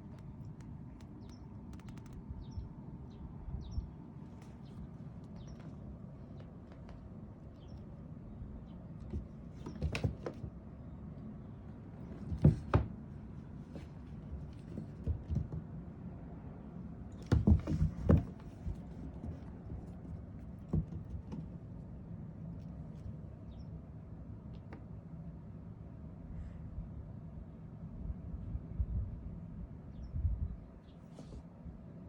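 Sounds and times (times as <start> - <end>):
kittens thumping and bumping: 8.3 - 10.9, 11.8 - 16.0, 17.1 - 21.8.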